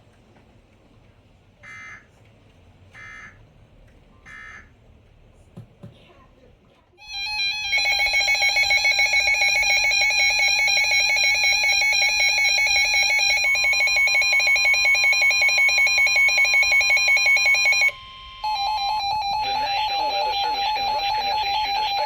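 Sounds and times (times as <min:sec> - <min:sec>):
steady higher tone: 0:07.0 - 0:22.0
warbling electronic alarm tone: 0:07.0 - 0:22.0.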